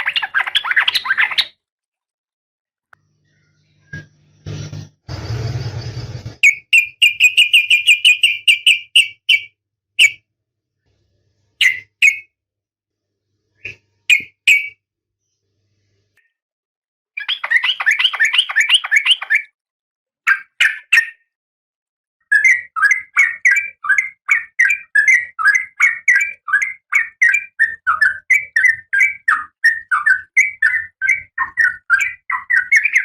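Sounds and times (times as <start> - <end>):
bird chirping: 0.0 - 1.6, 6.4 - 10.2, 11.6 - 12.4, 13.6 - 15.4, 17.2 - 19.6, 22.3 - 33.0.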